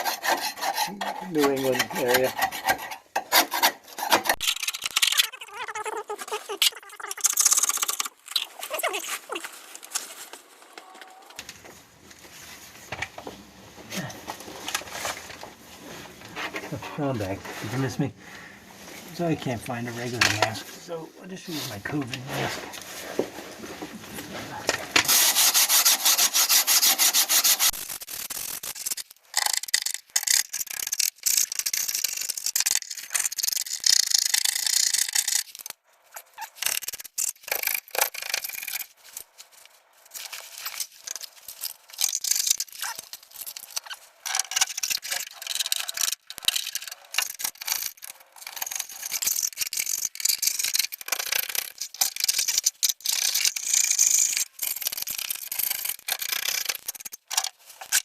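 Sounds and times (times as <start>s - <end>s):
rough scraping on car underbody: 0.0s - 4.4s.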